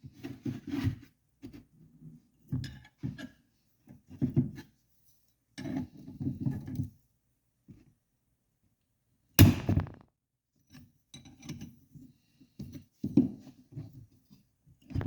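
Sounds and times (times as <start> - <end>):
loud sharp pop with ring: 9.4 - 10.0.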